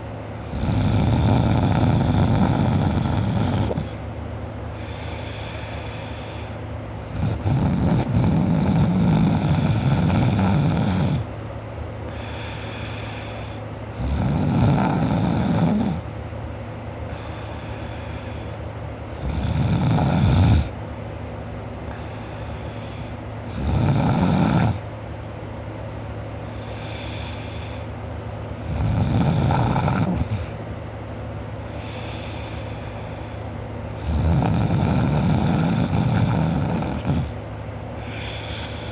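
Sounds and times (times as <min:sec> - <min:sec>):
steady low hum: 0:00.0 - 0:38.9
man snoring: 0:00.4 - 0:04.0, 0:04.8 - 0:11.3, 0:12.1 - 0:16.1, 0:19.1 - 0:20.8, 0:21.9 - 0:24.8, 0:26.5 - 0:27.9, 0:28.6 - 0:30.6, 0:34.0 - 0:37.4, 0:38.0 - 0:38.9.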